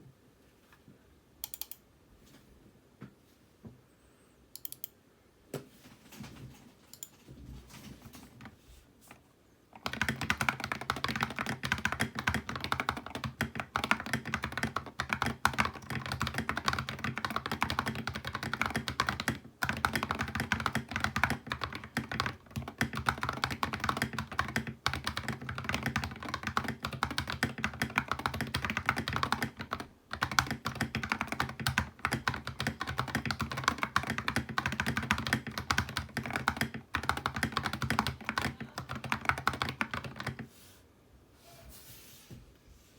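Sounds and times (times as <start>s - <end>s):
mechanical keyboard typing: 1.4s - 1.8s, 9.8s - 40.5s.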